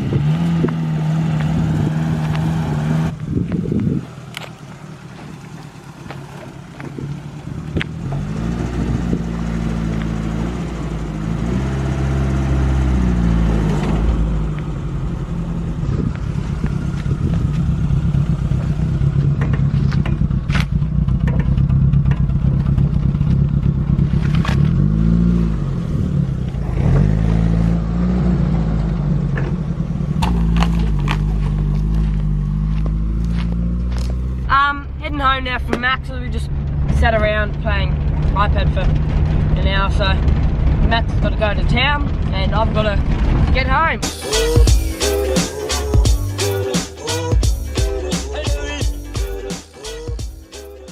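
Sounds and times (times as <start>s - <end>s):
car engine revving: 0.0s - 50.9s
clatter and knocks over rough ground: 18.5s - 24.8s, 29.3s - 34.2s, 35.7s - 43.9s.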